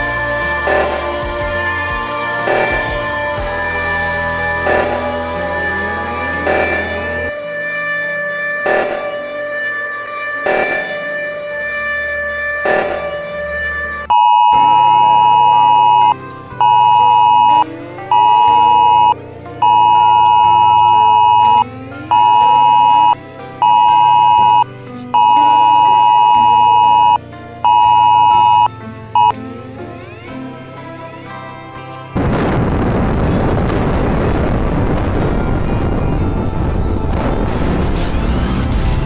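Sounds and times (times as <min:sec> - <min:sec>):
dark background music: 0:00.0 - 0:39.0
synthesized alarm beeping: 0:02.5 - 0:03.8, 0:04.6 - 0:07.3, 0:14.1 - 0:29.4.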